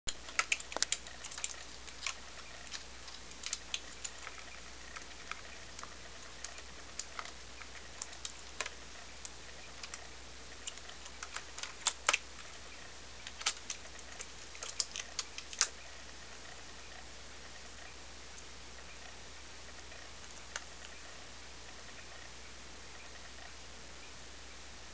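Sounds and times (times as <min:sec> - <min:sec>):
keyboard keys clicking: 0:00.1 - 0:08.8, 0:13.2 - 0:15.8
faint low hum: 0:00.1 - 0:24.9.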